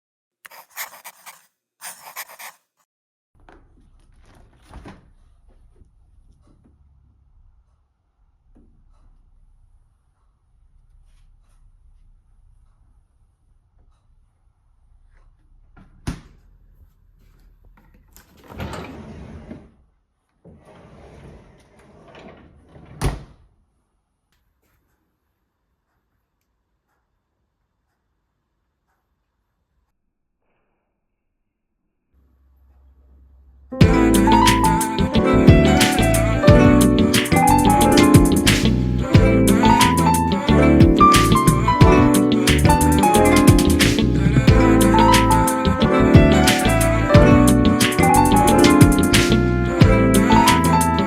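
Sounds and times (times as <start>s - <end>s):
sliding rustling noise: 0.5s - 2.8s.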